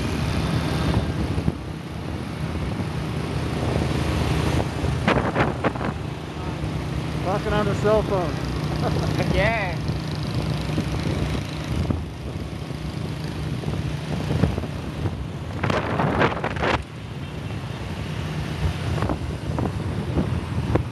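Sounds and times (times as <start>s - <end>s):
wind buffeting microphone: 0.0s - 6.2s, 9.1s - 16.9s, 18.5s - 20.9s
scooter engine running: 6.9s - 14.8s.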